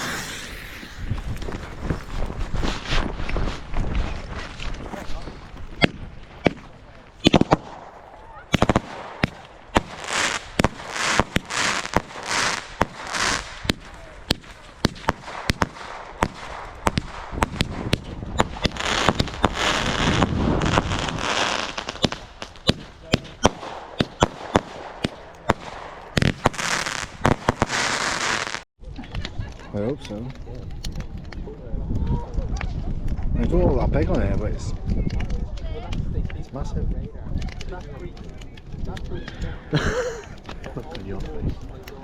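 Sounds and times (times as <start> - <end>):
fireworks hissing: 0.0 - 3.7, 5.0 - 25.1, 25.8 - 28.7
fireworks cracking and banging: 0.0 - 29.6, 39.8 - 42.0.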